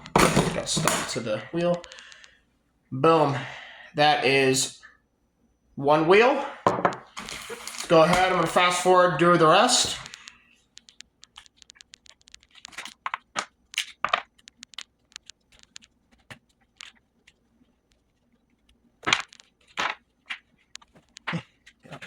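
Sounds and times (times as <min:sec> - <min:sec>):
small clicks and ticks: 0:01.7 - 0:02.4, 0:09.9 - 0:22.0.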